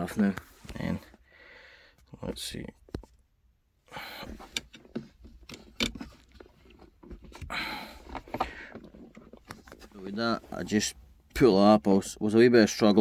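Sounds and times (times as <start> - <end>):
clicks and knocks of plastic parts: 4.3 - 10.0.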